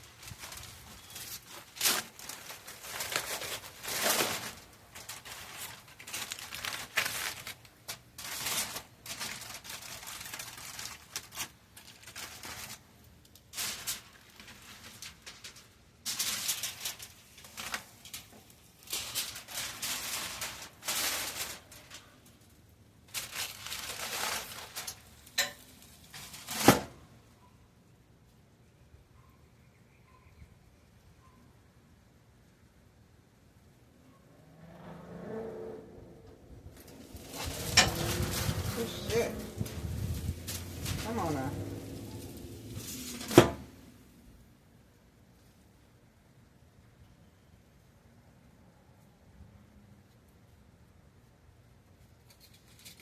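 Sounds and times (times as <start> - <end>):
wrapping material crinkling: 0.0 - 27.0, 36.8 - 44.0, 52.2 - 53.0.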